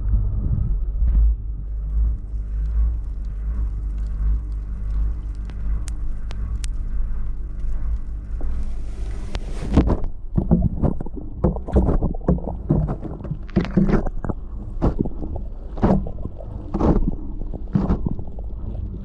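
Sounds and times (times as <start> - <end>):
water and laundry sloshing: 8.6 - 19.0.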